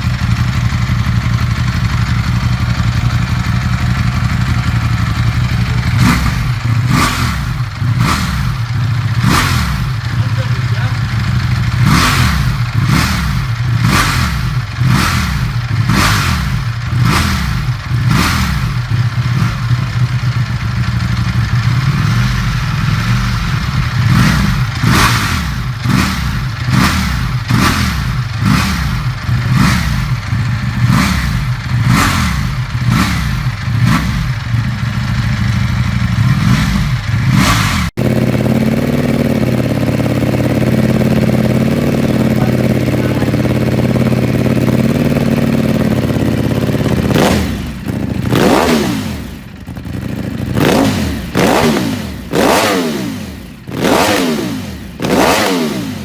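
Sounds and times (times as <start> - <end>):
motorcycle engine idling: 0.0 - 56.0
motorcycle engine revving: 0.0 - 56.0.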